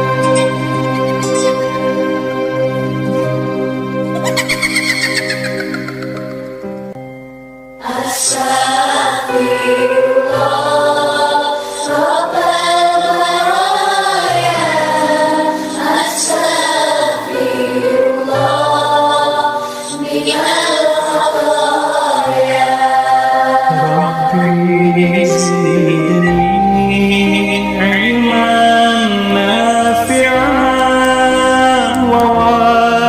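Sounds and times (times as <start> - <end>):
choir-like singing: 7.8 - 33.0.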